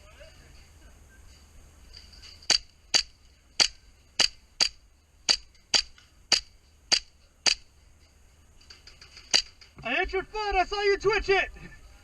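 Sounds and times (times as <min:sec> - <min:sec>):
airsoft gun shots: 0:02.5 - 0:07.7.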